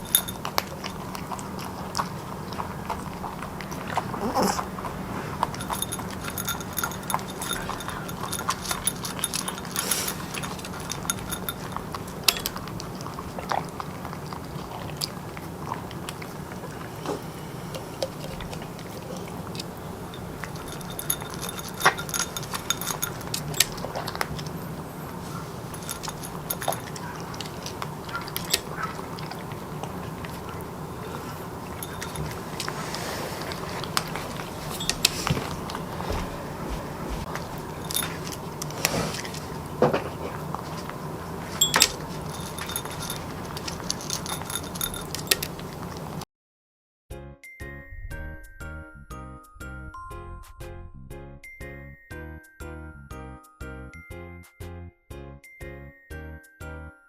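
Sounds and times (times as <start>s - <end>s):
pet chewing and crunching food: 0.0s - 46.2s
steady low hum: 0.0s - 46.2s
light clinks of a food bowl: 41.6s - 43.2s.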